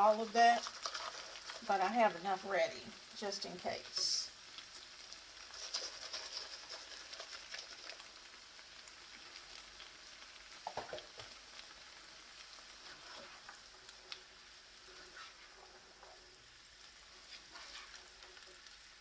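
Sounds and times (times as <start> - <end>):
vegetables sizzling in a pan: 0.0 - 19.0
small ticks: 0.6 - 1.6, 4.4 - 14.3.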